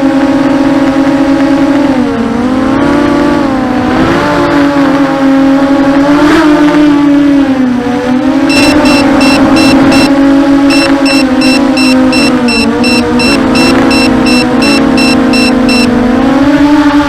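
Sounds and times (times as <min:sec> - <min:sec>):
drone propellers whining: 0:08.4 - 0:16.7
high electronic beep: 0:08.5 - 0:15.9.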